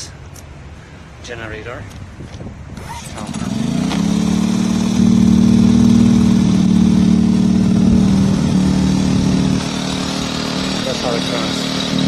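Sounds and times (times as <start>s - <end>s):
generator engine running: 2.8s - 12.0s
electric die grinder humming: 3.4s - 12.0s.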